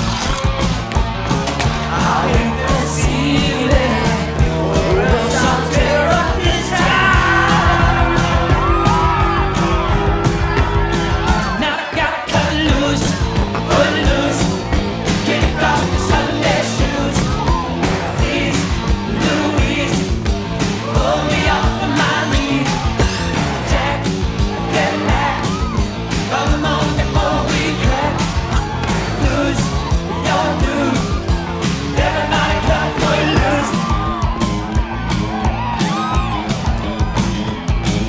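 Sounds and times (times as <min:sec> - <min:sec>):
loud rock and roll music: 0:00.0 - 0:38.0
singing and yelling: 0:00.0 - 0:38.0.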